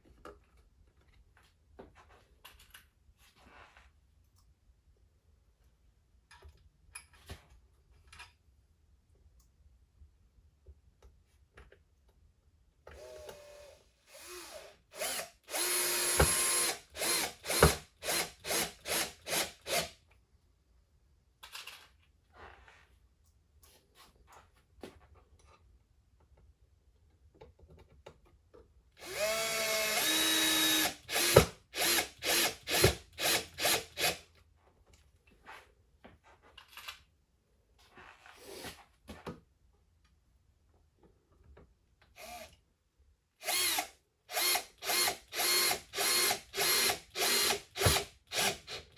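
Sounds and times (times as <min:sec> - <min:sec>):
power drill driving screws: 0:12.9 - 0:20.0, 0:29.0 - 0:34.2, 0:42.2 - 0:42.6, 0:43.4 - 0:48.9.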